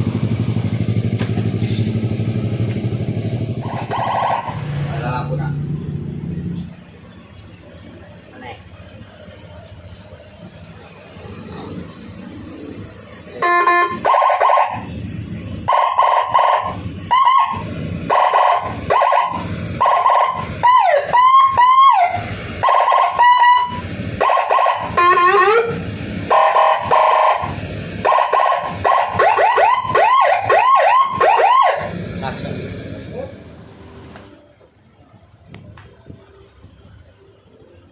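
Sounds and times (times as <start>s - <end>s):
electronic siren yelping: 3.6s - 4.7s, 13.4s - 14.9s, 15.7s - 31.9s.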